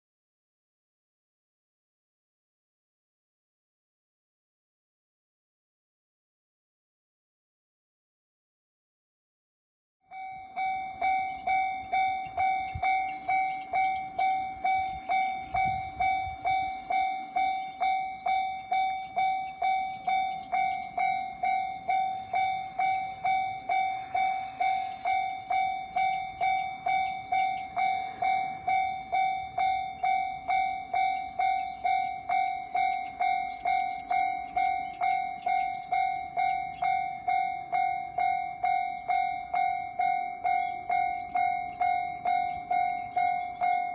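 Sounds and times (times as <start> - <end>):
railroad crossing warning bell: 10.0 - 43.9.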